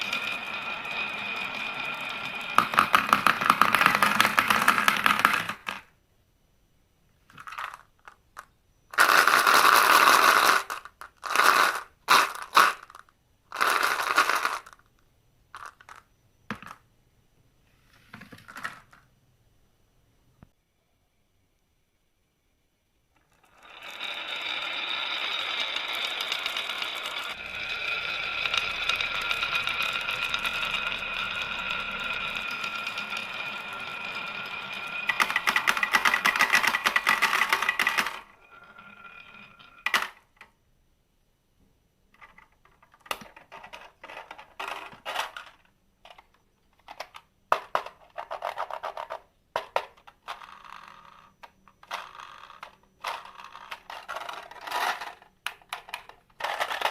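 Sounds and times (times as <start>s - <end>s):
marbles clattering: 0.0s - 5.9s, 7.3s - 16.8s, 23.2s - 40.4s, 42.2s - 56.9s
marbles dropping on track: 0.0s - 5.9s, 7.3s - 16.9s, 23.2s - 40.4s, 46.9s - 56.9s
marbles rolling on track: 0.0s - 5.9s, 7.3s - 15.0s, 15.6s - 16.8s, 23.2s - 40.4s, 42.2s - 56.9s.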